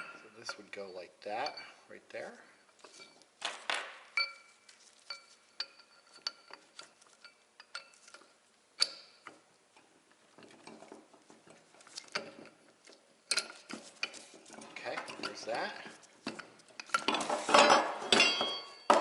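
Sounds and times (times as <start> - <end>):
steel parts clinking: 4.1 - 9.4, 11.8 - 19.0
sharp metal clank: 17.1 - 19.0.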